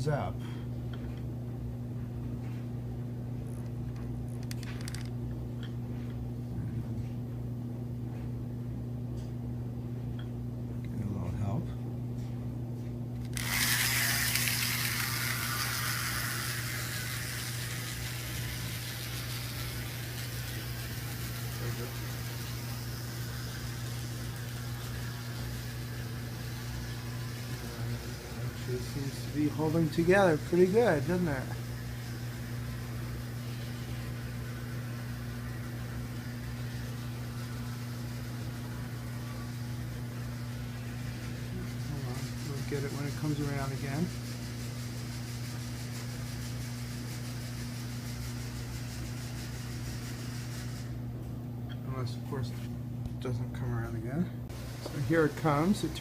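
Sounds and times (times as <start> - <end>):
low steady hum: 0.0 - 45.2
model train motor whirring: 4.4 - 5.1, 13.2 - 50.9.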